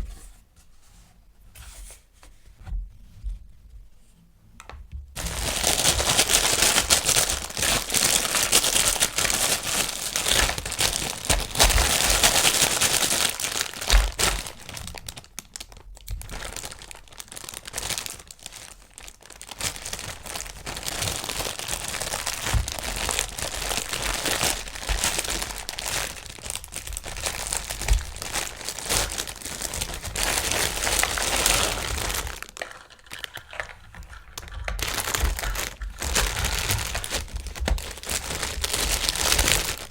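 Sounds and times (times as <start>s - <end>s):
dull knocks of package handling: 4.9s - 14.9s, 20.7s - 32.5s, 34.8s - 39.9s
packaging crinkling: 5.2s - 39.9s.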